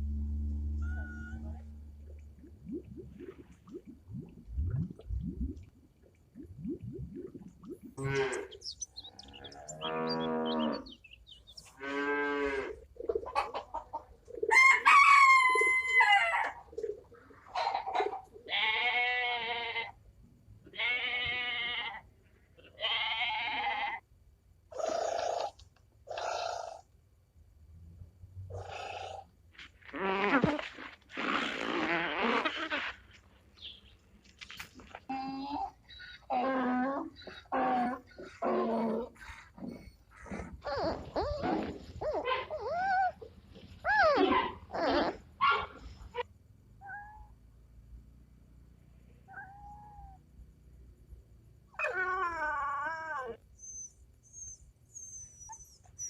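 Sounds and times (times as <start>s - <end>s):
farm animals bleating: 8.0s - 11.0s, 18.4s - 20.0s, 20.7s - 24.0s.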